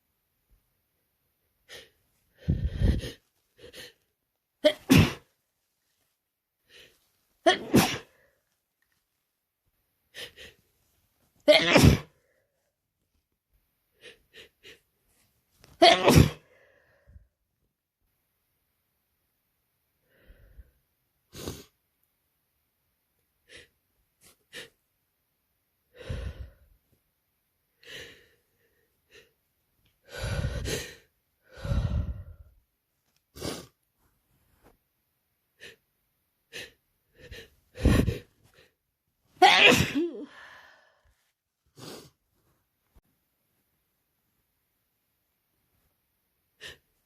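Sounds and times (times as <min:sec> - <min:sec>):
short breaths: 0:01.7 - 0:04.0, 0:30.0 - 0:32.6, 0:40.2 - 0:42.2
person sneezing: 0:04.6 - 0:05.3, 0:07.4 - 0:08.2, 0:11.4 - 0:12.1, 0:15.8 - 0:16.5, 0:39.4 - 0:40.4.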